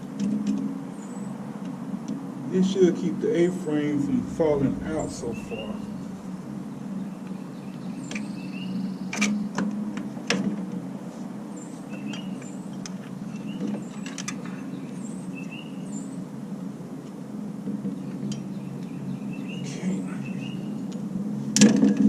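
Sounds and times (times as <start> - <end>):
steady low hum: 2.4 - 8.1.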